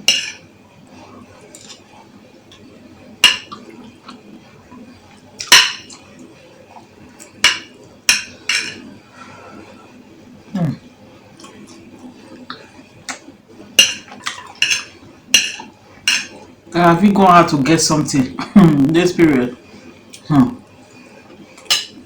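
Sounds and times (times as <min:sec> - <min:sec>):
cutlery clinking against a bowl: 0:00.0 - 0:00.4, 0:01.5 - 0:01.8, 0:03.2 - 0:04.2, 0:05.4 - 0:06.1, 0:07.4 - 0:08.9, 0:13.8 - 0:16.5, 0:21.6 - 0:22.0.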